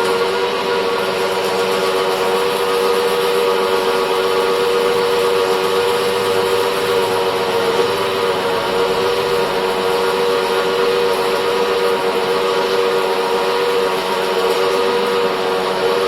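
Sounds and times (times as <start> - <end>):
hydraulic drilling machine hum: 0.0 - 16.0.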